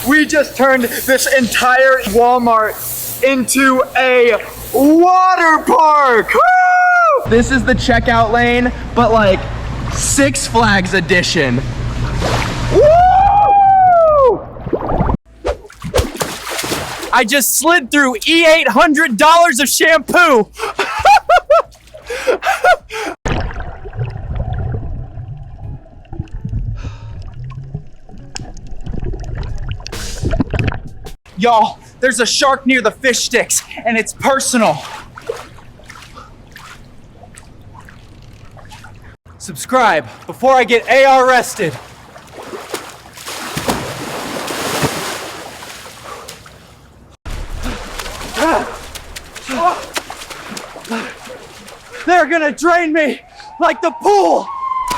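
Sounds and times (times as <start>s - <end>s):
hiss of spray: 0.0s - 5.0s
steady low rumble: 7.3s - 13.0s
low hum: 7.3s - 15.1s, 23.4s - 31.2s
water sloshing and gurgling: 9.6s - 13.0s, 14.4s - 17.2s, 20.6s - 31.2s, 33.5s - 39.2s, 40.0s - 52.3s
small splashes: 14.9s - 17.2s, 20.9s - 22.5s, 34.5s - 39.2s, 40.1s - 52.3s.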